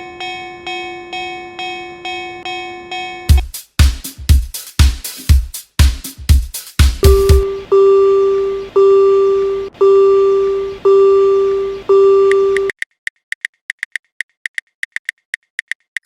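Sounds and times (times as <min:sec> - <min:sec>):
railroad crossing alarm tone: 0:07.0 - 0:12.7.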